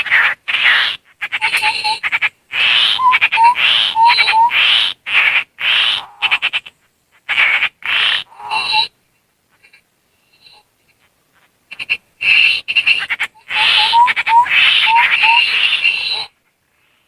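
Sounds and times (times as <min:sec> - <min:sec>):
bird harsh buzzy chattering: 0:00.0 - 0:08.9.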